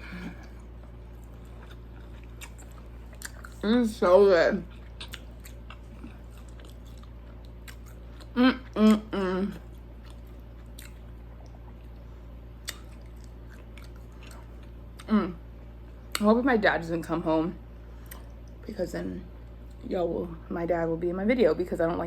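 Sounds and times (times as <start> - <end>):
person chewing food: 0.0 - 3.6, 4.6 - 15.1, 18.0 - 18.6.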